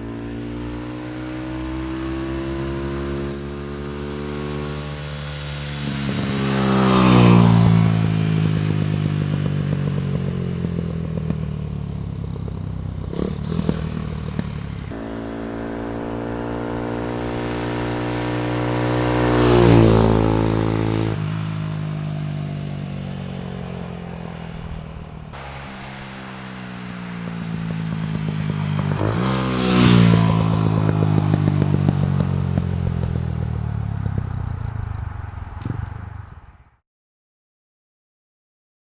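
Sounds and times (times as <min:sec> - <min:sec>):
motorcycle engine revving: 0:00.0 - 0:36.8
exhaust pops: 0:29.9 - 0:36.6.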